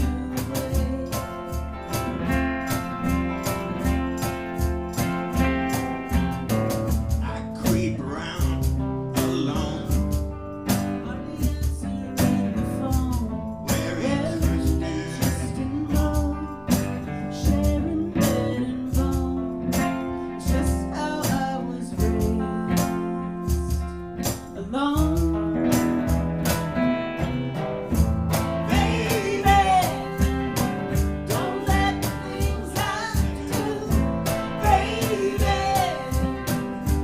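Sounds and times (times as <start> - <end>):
person singing: 0.0 - 2.8, 7.2 - 10.0, 10.7 - 26.1, 28.5 - 37.0
live band playing: 0.0 - 37.0.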